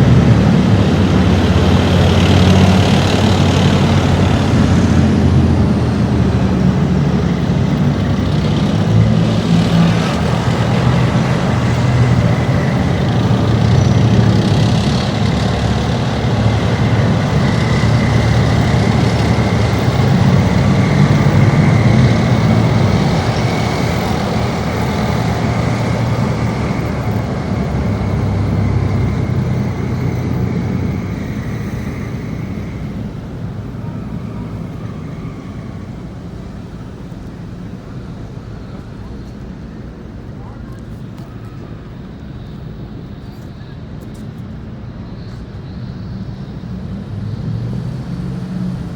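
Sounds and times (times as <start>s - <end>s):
high whine: 0.0s - 47.6s
armoured vehicles driving past: 0.0s - 48.9s
diesel engines rumbling: 0.0s - 48.9s.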